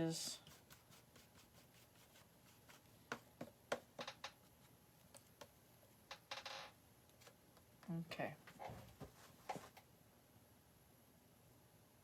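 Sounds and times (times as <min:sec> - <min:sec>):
paintbrush tapping: 0:02.7 - 0:04.0.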